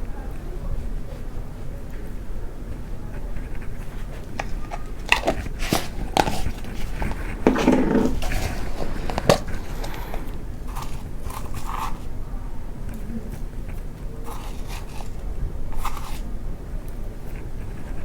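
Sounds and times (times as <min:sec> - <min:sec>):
scraping rustle: 0:03.1 - 0:12.2, 0:13.4 - 0:16.4
utensils knocking against cooking pot: 0:04.4 - 0:10.0.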